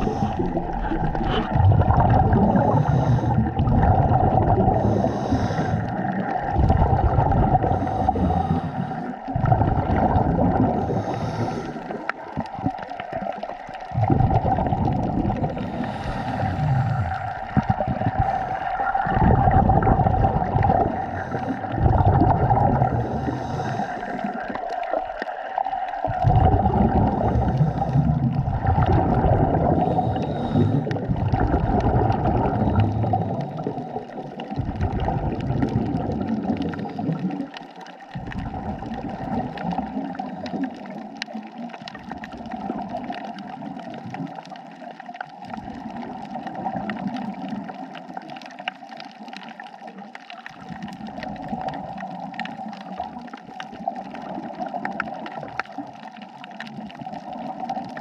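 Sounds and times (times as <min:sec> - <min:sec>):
underwater bubbling: 0:00.0 - 0:58.0.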